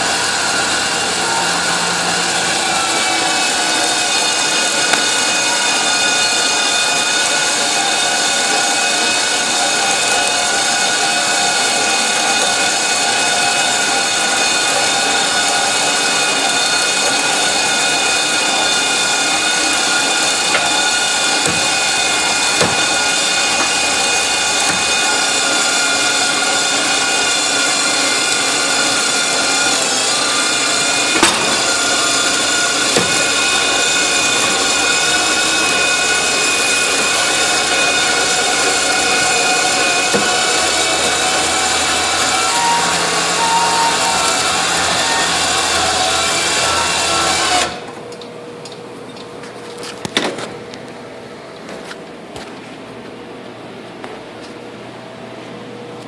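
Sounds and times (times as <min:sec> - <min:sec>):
power tool motor whining: 0:00.0 - 0:47.9.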